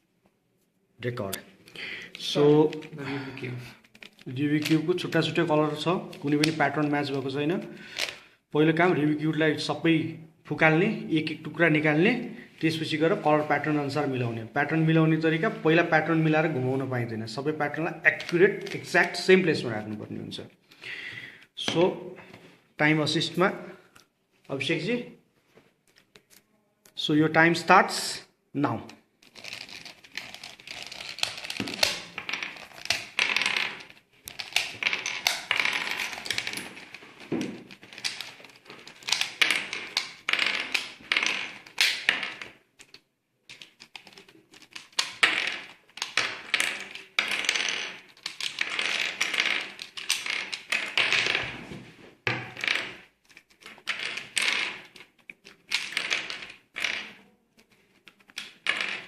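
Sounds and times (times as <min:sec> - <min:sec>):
plastic pieces clicking and clattering: 0:01.7 - 0:08.2, 0:28.7 - 0:51.6, 0:52.3 - 0:59.0.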